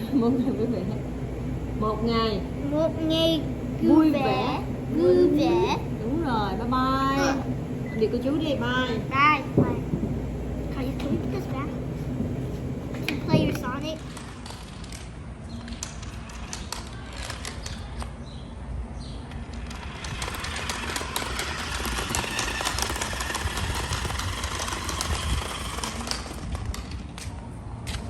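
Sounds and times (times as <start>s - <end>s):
rushing rattling noise: 0.0s - 15.2s, 19.3s - 27.3s
plastic toys clicking: 14.1s - 18.1s, 19.5s - 27.3s.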